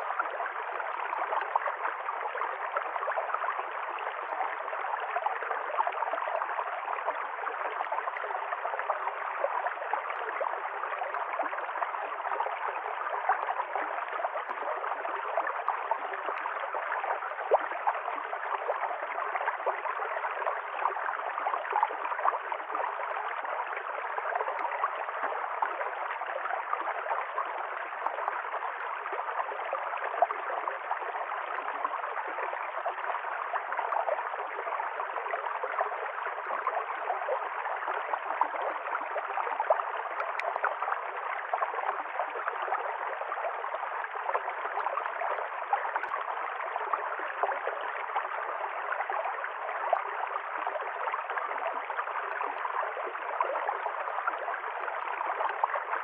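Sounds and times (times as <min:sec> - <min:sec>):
stream water gurgling over rocks: 0:00.0 - 0:56.0
small water splashes: 0:36.8 - 0:48.6.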